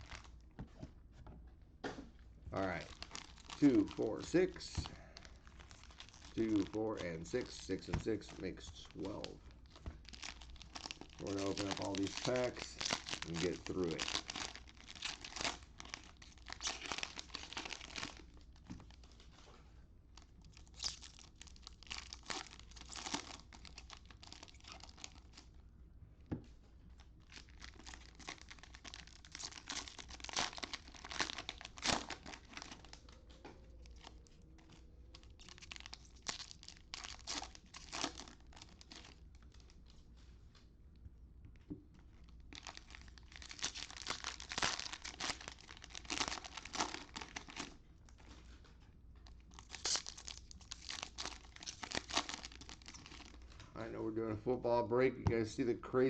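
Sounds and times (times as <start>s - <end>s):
cellophane wrappers tearing and crinkling: 0.0s - 0.3s, 2.6s - 19.4s, 20.2s - 25.5s, 27.2s - 39.8s, 42.2s - 48.5s, 49.2s - 53.6s.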